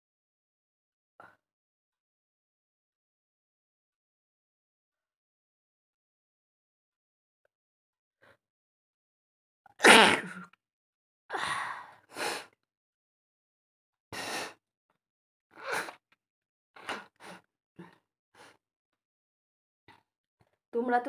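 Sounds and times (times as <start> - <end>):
woman sneezing: 9.8 - 10.4.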